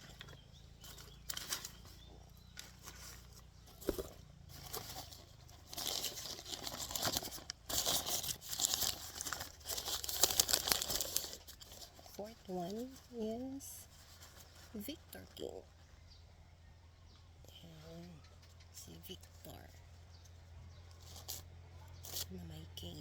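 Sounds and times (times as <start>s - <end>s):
packing wrap crinkling and tearing: 0.8s - 12.2s.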